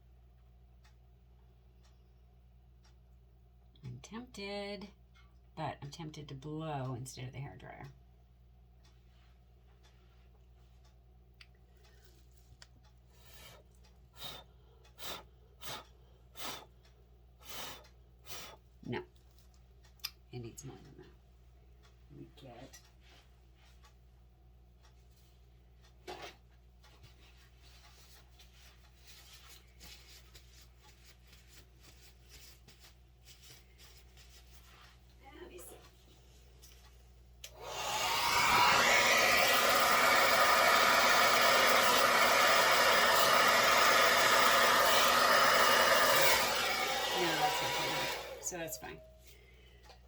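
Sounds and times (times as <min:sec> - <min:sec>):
low electrical hum: 0:00.0 - 0:37.6
puffs of breath blown: 0:14.2 - 0:16.7
hands rustling materials: 0:27.1 - 0:35.2.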